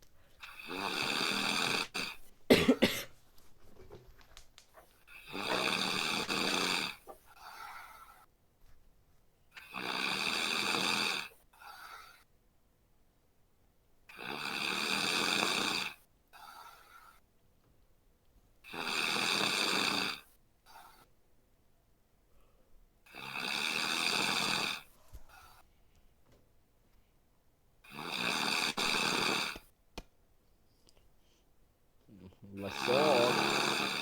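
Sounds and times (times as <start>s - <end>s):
man snoring: 0.4s - 2.9s, 5.1s - 8.2s, 9.6s - 11.4s, 14.1s - 17.1s, 18.7s - 21.1s, 23.1s - 24.9s, 27.8s - 29.6s, 32.2s - 34.0s.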